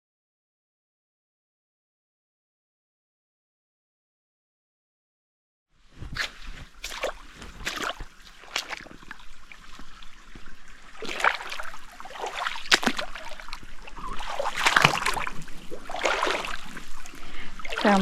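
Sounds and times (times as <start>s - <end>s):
water splashing from wading: 6.0s - 18.0s.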